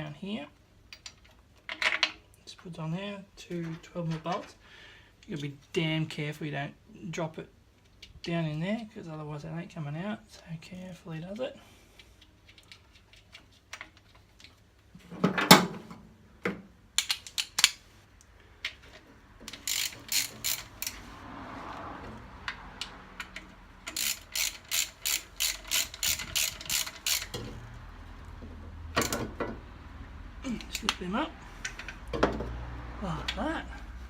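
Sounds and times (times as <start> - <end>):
ratchet wrench clicking: 17.0 - 17.8, 19.4 - 21.1, 22.4 - 27.8.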